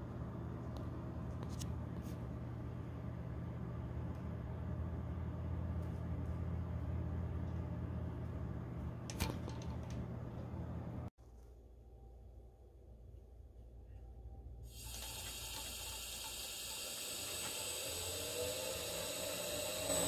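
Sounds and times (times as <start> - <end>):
electric motor humming: 14.8 - 20.0.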